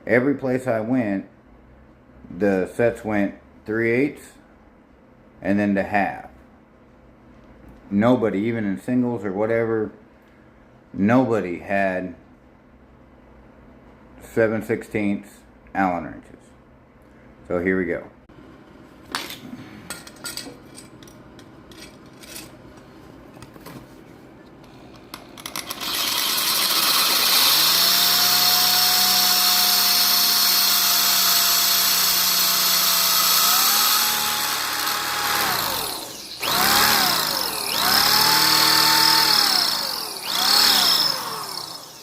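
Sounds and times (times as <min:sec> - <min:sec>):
tool handling clicks: 0:24.6 - 0:25.8
power tool cutting steel: 0:25.6 - 0:42.0.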